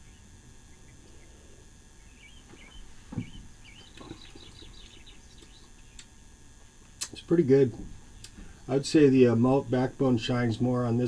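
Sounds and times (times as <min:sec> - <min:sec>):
faint birds chirping: 0:00.0 - 0:11.0
soft low thump: 0:02.5 - 0:04.2.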